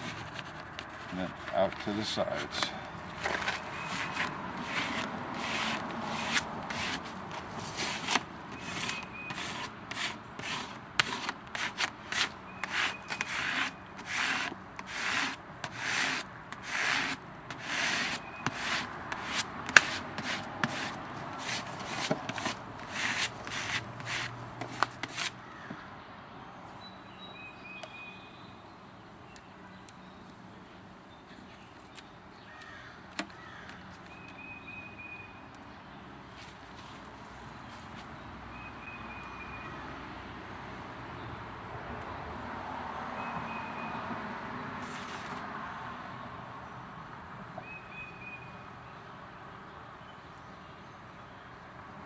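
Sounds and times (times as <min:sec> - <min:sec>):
putty knife rubbing on glass: 0:03.2 - 0:25.4.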